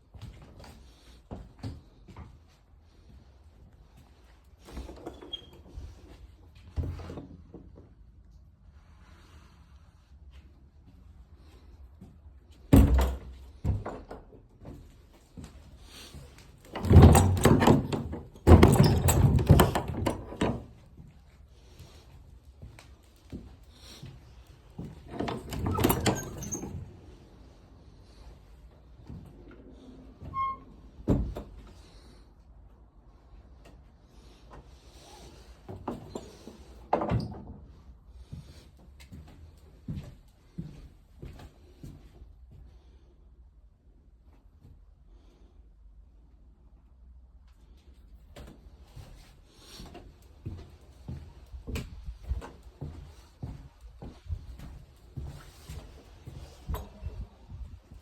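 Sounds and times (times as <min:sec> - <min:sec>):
wooden clattering: 0:16.7 - 0:20.8.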